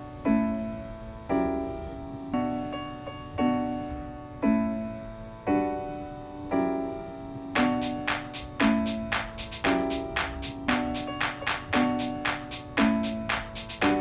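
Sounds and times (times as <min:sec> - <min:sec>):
slow piano chords: 0:00.0 - 0:14.0.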